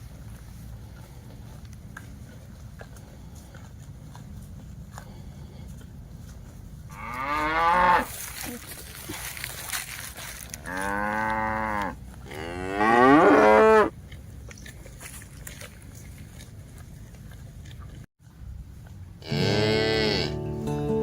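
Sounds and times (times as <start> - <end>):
cattle mooing: 6.9 - 8.1, 10.6 - 13.9, 19.2 - 20.4.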